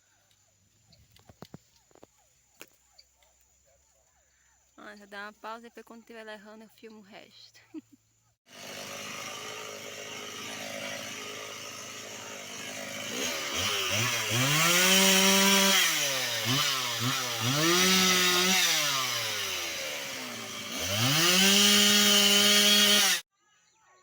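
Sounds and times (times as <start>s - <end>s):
two-stroke chainsaw revving: 8.5s - 23.2s.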